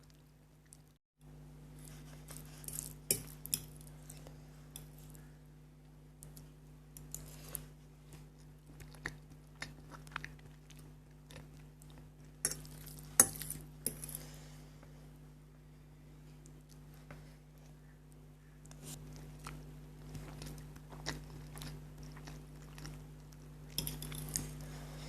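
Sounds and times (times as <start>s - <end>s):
chewing: 6.2s - 13.2s, 16.4s - 24.9s.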